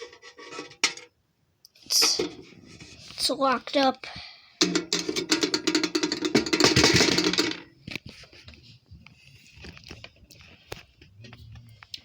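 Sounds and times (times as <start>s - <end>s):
scattered clicks and knocks: 4.6s - 8.2s.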